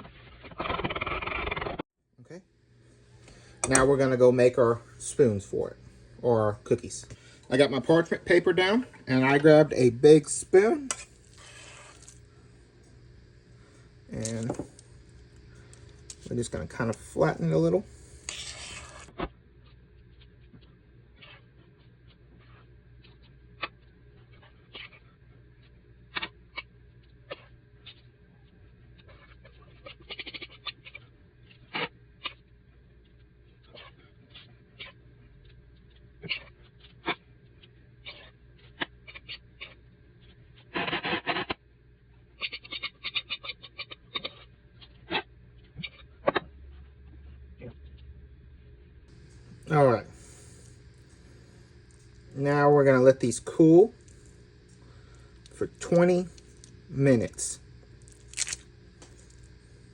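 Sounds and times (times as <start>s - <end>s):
low steady hum: 2.2s - 30.0s, 30.8s - 40.8s, 41.6s - 59.9s
spoon scraping and tapping: 3.6s - 3.9s, 10.9s - 12.2s.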